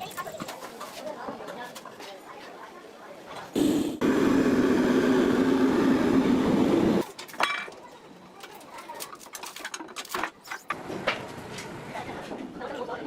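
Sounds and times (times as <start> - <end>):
loud power tool: 3.6 - 7.0.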